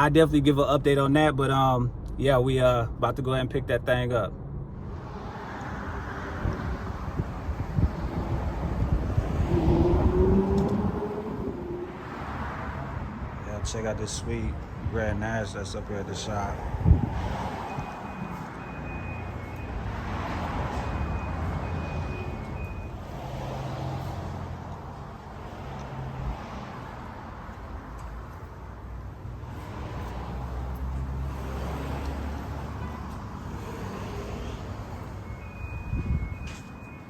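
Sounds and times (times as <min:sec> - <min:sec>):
road and traffic noise: 0:00.0 - 0:37.0
high repeating beep: 0:35.2 - 0:37.0.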